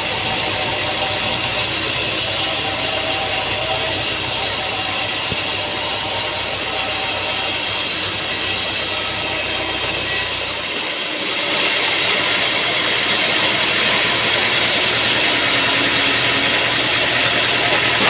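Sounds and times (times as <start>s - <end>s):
sawmill machinery drone: 0.0s - 18.0s.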